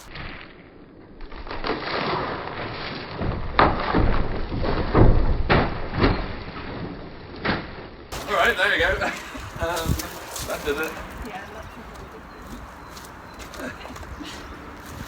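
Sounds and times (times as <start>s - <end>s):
timber knocking and cracking: 8.1s - 11.3s.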